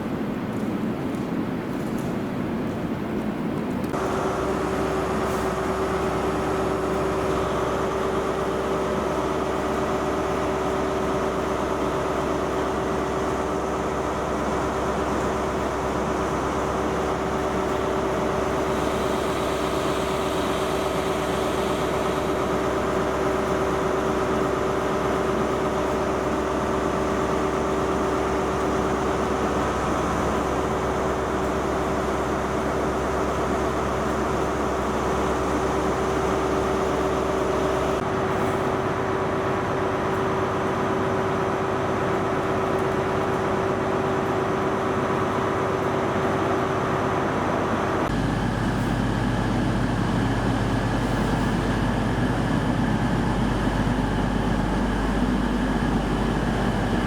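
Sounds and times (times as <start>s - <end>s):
steady machine hum: 0.0s - 57.0s.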